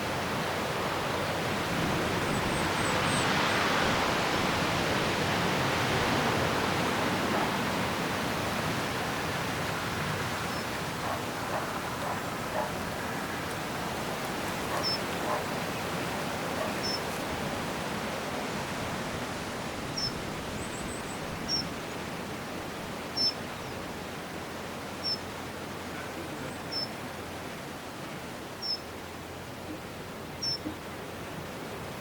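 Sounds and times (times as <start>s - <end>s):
wind rushing through trees: 0.0s - 32.0s
small bird calling: 14.7s - 15.9s, 16.6s - 17.1s, 26.0s - 27.0s, 29.6s - 31.0s.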